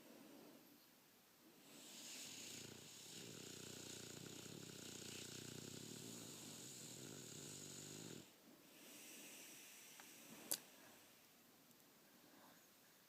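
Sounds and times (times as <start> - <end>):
pet snoring: 1.6 - 10.2.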